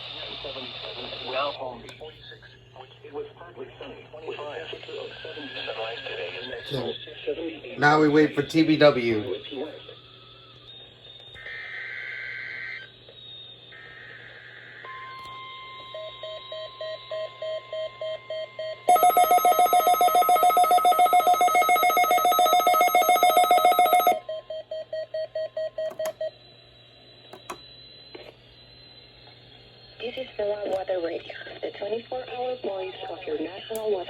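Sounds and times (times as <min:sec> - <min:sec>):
steady warning alarm tone: 0:16.0 - 0:30.7
warbling data tones: 0:18.9 - 0:24.2
alert receivers beeping: 0:18.9 - 0:26.3.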